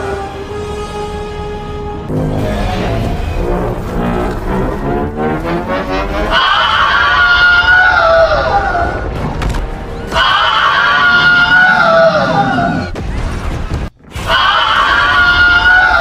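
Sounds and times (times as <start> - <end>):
film soundtrack music: 0.0 - 16.0
low rumble: 2.1 - 6.4.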